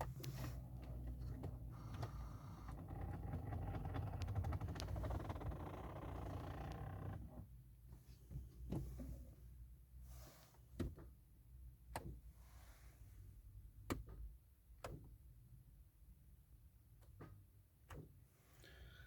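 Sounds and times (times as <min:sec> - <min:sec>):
car electrical hum: 0:00.0 - 0:09.5.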